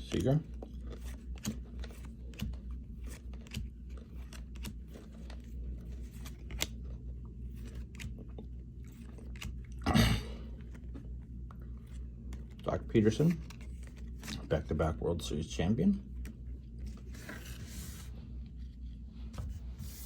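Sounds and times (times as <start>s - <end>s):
cards being flipped through: 0.1s - 8.3s, 8.9s - 9.6s, 11.8s - 14.7s, 16.2s - 20.0s.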